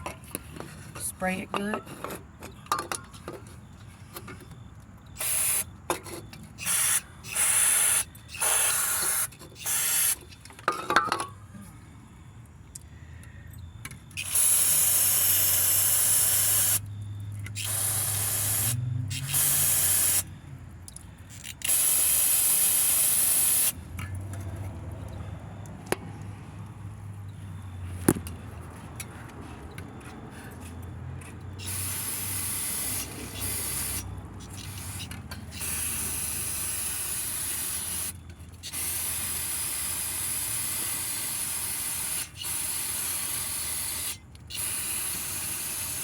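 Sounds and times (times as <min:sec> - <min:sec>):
aerosol cleaner hissing: 0:14.2 - 0:16.8, 0:17.6 - 0:20.2, 0:21.7 - 0:23.8.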